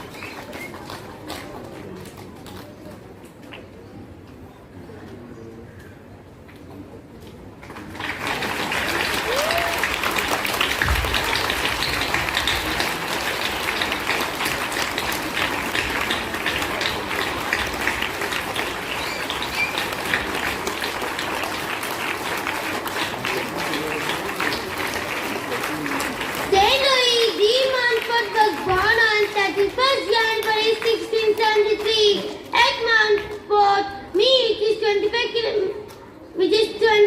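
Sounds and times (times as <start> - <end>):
crowd clapping: 0.0 - 3.7, 7.6 - 33.4.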